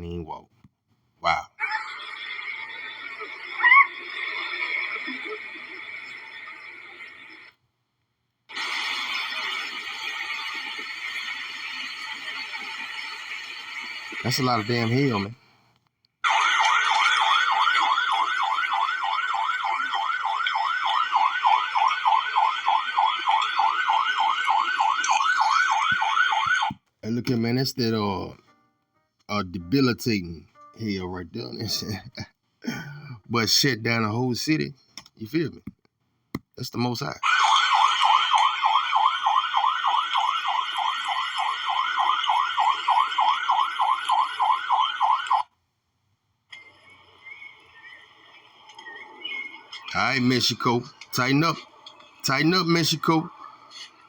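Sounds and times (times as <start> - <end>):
electronic siren sweeping up and down: 16.2 - 26.8, 37.2 - 45.4.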